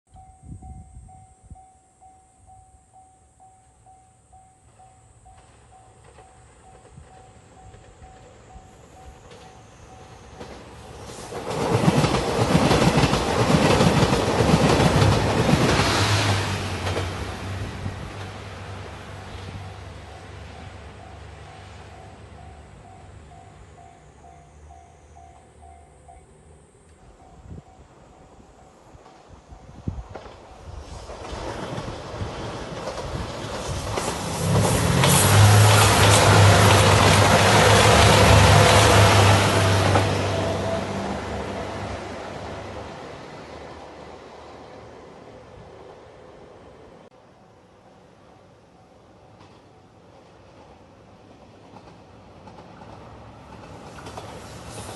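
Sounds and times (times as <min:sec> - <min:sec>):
diesel train passing: 0:00.1 - 0:54.9
wheels clacking over rails: 0:05.3 - 0:18.6, 0:30.1 - 0:41.7, 0:51.6 - 0:54.9
wheels clattering over rail joints: 0:30.1 - 0:40.7.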